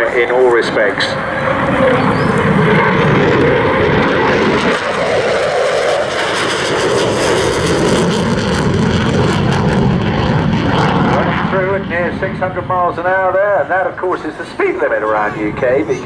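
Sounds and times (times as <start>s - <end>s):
fighter jet engines passing: 0.0s - 16.0s.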